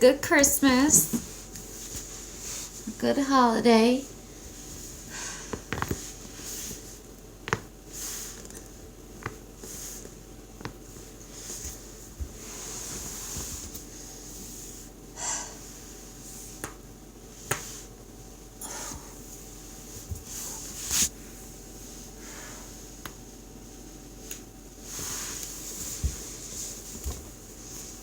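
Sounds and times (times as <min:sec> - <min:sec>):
breathy exhales: 0:15.2 - 0:15.6.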